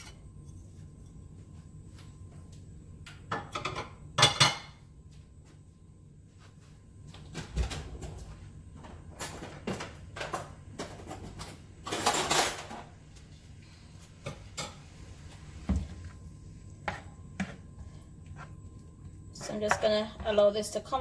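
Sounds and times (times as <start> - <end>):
utensils clattering against a pot: 3.3 - 4.8, 9.2 - 12.9.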